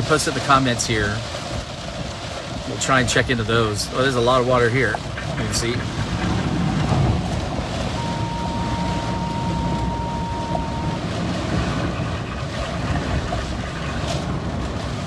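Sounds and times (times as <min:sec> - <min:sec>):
heavy rain: 0:00.0 - 0:15.0
tyres splashing through water: 0:00.0 - 0:15.0
thin high tone: 0:05.5 - 0:11.9.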